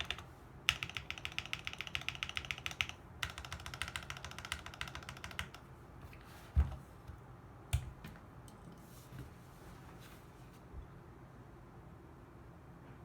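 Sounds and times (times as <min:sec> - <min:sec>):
fast mechanical keyboard typing: 0:00.0 - 0:05.7.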